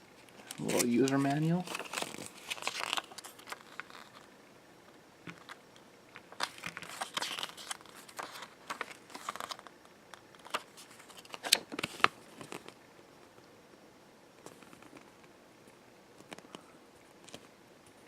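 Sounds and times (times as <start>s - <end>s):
paper rustling and crinkling: 0.2s - 4.3s, 6.2s - 12.8s.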